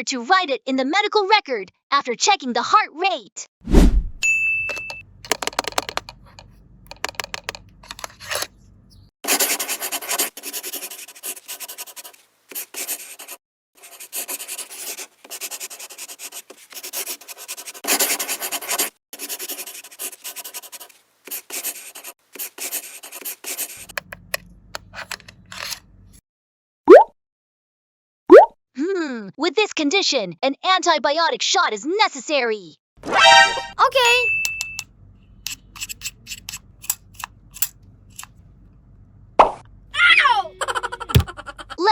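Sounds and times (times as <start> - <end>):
pen scratching on paper: 4.8 - 8.5, 9.2 - 24.2.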